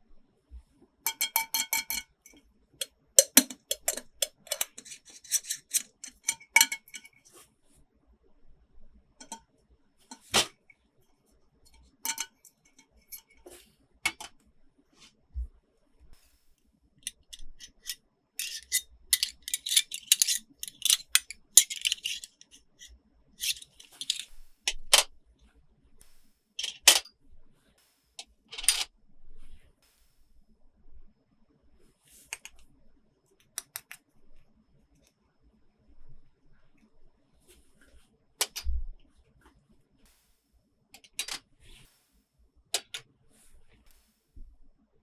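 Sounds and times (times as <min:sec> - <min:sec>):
plastic toy pieces clicking: 0:03.2 - 0:07.0, 0:17.1 - 0:22.6, 0:23.4 - 0:24.3, 0:26.6 - 0:27.0.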